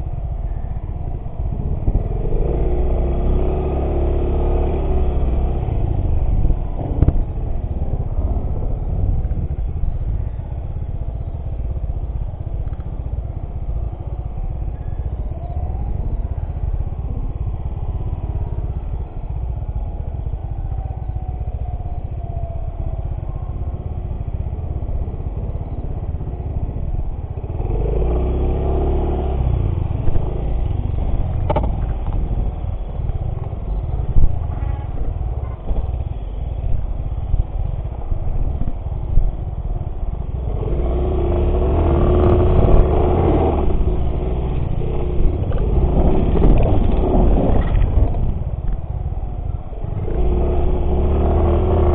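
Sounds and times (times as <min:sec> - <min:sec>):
motorcycle engine revving: 0:01.0 - 0:19.9, 0:20.9 - 0:51.9.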